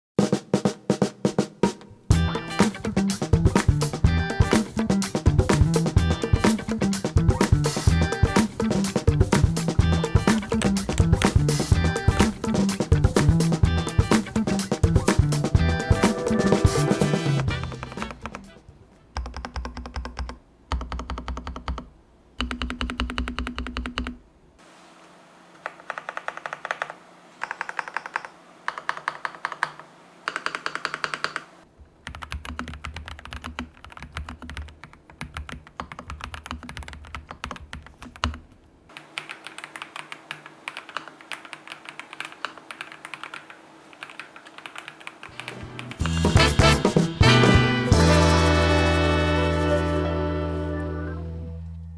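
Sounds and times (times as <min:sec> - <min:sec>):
typing on mechanical keyboard: 0:19.2 - 0:24.2, 0:25.6 - 0:46.0.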